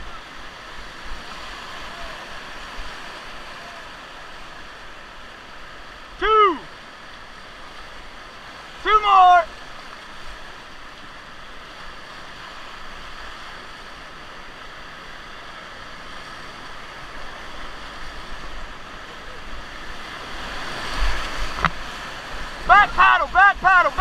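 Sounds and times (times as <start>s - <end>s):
rushing river rapids: 0.0s - 24.0s.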